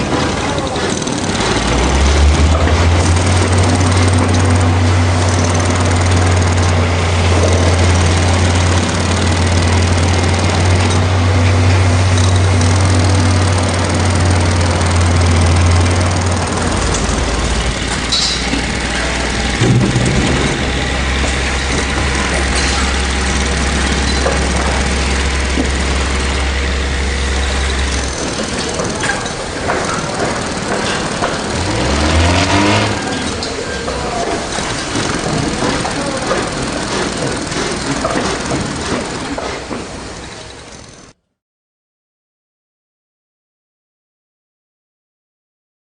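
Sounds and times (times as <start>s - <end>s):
engine revving: 0.0s - 41.2s
heavy machinery engines running: 0.0s - 41.2s
low drone: 1.4s - 41.2s
knocks: 19.6s - 23.1s.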